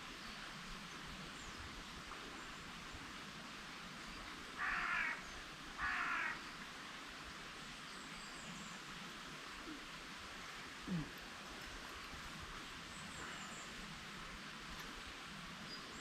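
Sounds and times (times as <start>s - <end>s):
faint hiss: 0.0s - 16.0s
crow cawing: 4.6s - 5.2s, 5.8s - 6.4s.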